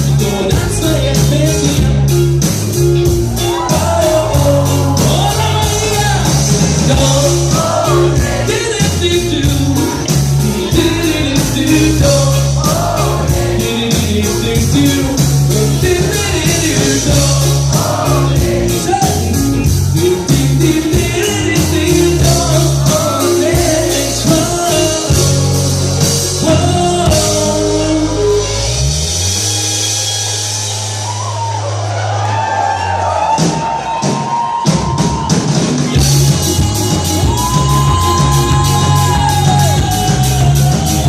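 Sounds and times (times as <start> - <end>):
lead singer singing: 0.0 - 2.3, 3.3 - 28.7, 35.9 - 41.0
rock band playing: 0.0 - 41.0.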